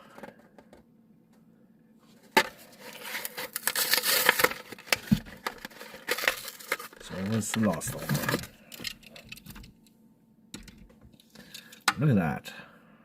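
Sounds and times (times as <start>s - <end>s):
plastic crackling and scraping: 2.2s - 9.8s.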